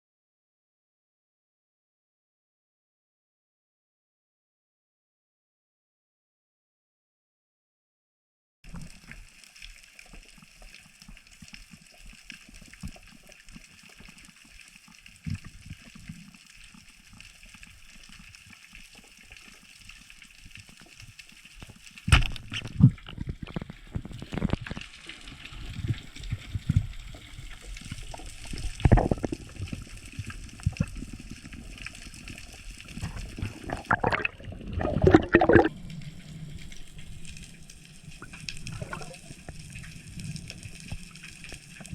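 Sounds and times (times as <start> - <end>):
water sloshing and gurgling: 8.7 - 41.9.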